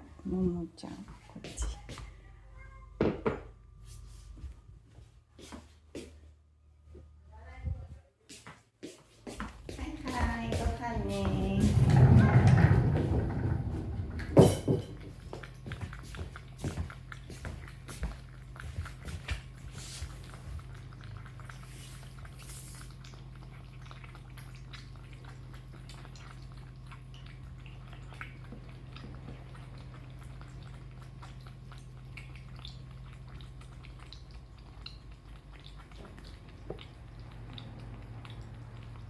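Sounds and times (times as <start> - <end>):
cats chewing food: 8.4 - 39.0
low hum: 10.6 - 16.5.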